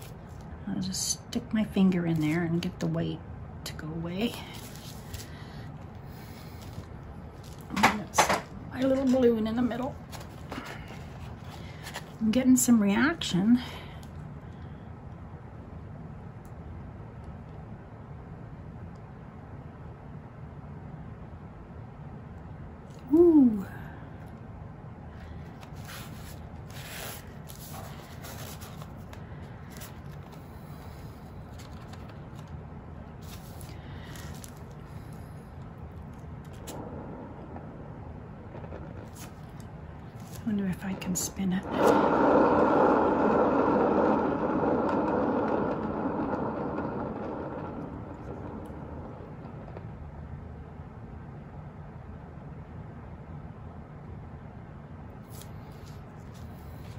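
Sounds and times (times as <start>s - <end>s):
steady low hum: 0.0s - 56.9s
rustling of materials handled: 4.3s - 12.2s, 25.4s - 32.6s, 33.2s - 35.2s
paint spinner whirring: 36.1s - 50.0s.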